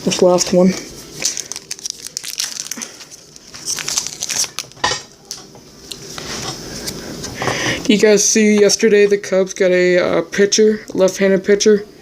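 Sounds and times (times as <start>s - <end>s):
foil wrapper tearing and crinkling: 1.0s - 5.2s.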